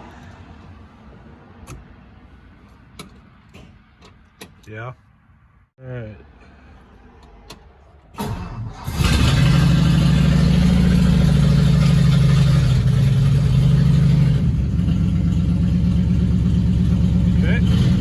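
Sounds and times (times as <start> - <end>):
car engine cranking and starting: 1.6 - 4.7, 7.1 - 16.0
car engine idling: 6.6 - 18.0.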